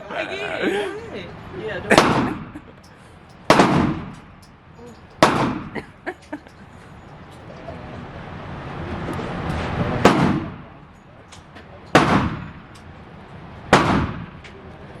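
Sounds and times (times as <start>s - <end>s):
handgun shots with echo: 1.9s - 2.5s, 3.5s - 4.3s, 5.2s - 5.8s, 10.0s - 10.6s, 11.9s - 12.7s, 13.7s - 14.4s.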